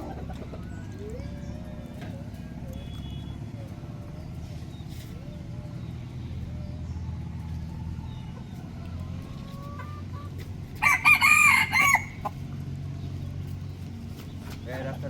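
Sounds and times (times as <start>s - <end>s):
small birds chirping: 0.0s - 15.0s
rooster crowing: 10.8s - 12.4s.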